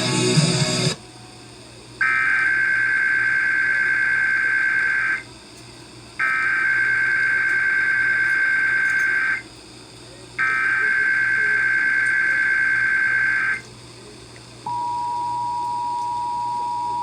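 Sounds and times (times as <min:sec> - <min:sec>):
music: 0:00.0 - 0:01.0
buzzing digital data tone: 0:06.2 - 0:09.5, 0:10.4 - 0:13.6.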